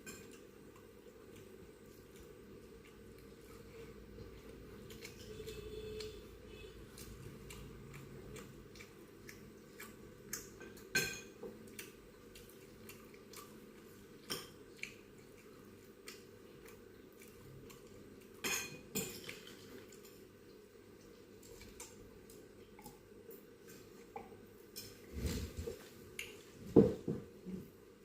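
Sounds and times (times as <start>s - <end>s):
utensils clinking on a plate: 10.6s - 11.4s.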